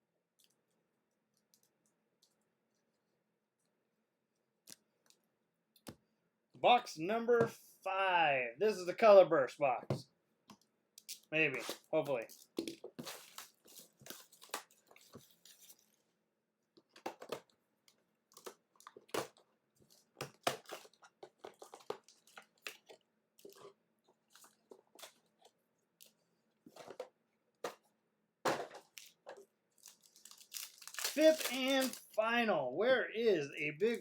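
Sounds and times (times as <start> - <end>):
plastic wrapping being torn: 29.8 - 32.2.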